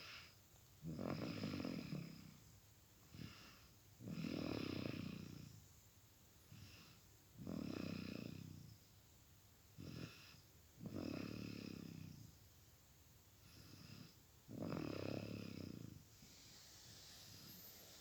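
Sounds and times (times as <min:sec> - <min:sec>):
child snoring: 0:00.9 - 0:02.3, 0:03.1 - 0:05.4, 0:09.8 - 0:12.1, 0:13.5 - 0:18.0
faint breath: 0:16.1 - 0:18.0.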